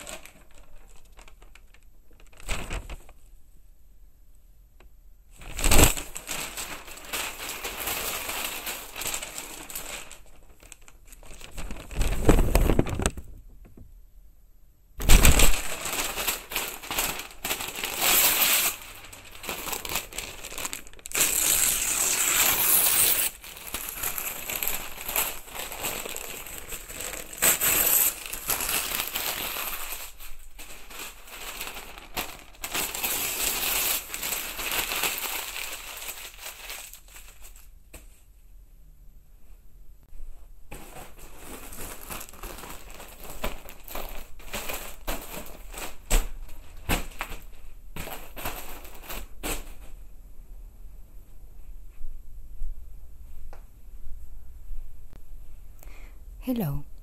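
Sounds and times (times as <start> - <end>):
close crinkling and crackling: 0.0 - 3.4, 5.4 - 13.8, 15.0 - 38.2, 40.1 - 50.0.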